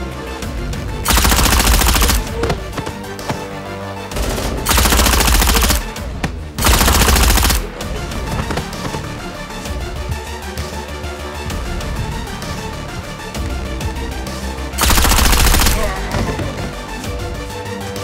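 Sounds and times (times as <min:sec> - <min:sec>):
background music: 0:00.0 - 0:18.0
machine-gun fire: 0:01.0 - 0:02.4, 0:04.2 - 0:06.0, 0:06.6 - 0:07.7, 0:14.8 - 0:16.0.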